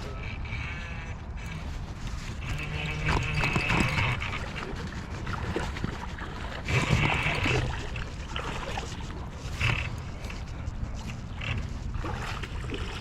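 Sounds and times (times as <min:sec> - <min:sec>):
creek running: 0:00.0 - 0:13.0
water splashing: 0:01.4 - 0:13.0.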